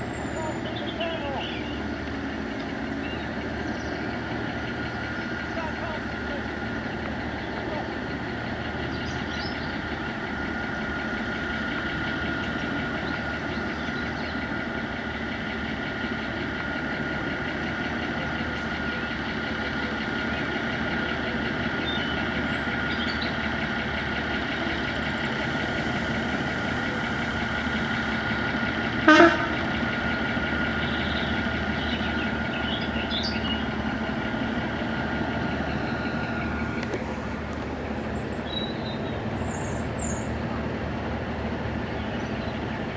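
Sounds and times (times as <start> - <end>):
diesel locomotive engine running: 0.0 - 42.9.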